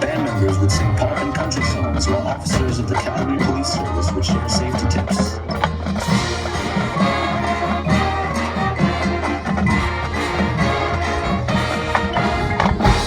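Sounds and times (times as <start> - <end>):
marching band playing: 0.0 - 13.0
drum hits: 5.0 - 13.0.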